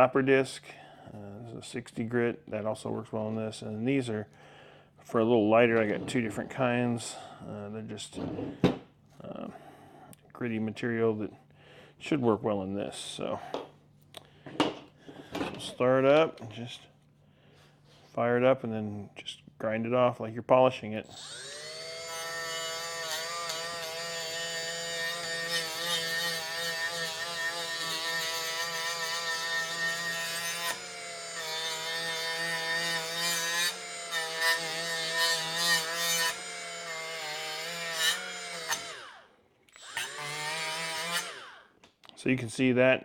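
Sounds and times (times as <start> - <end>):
die grinder whining: 21.1 - 41.7.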